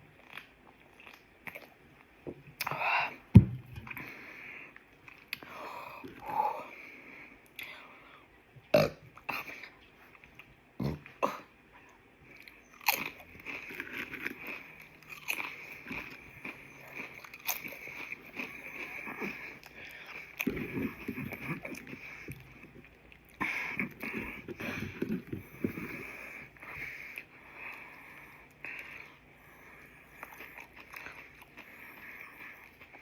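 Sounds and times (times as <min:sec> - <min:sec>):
chewing: 0:00.1 - 0:02.8, 0:11.8 - 0:33.0.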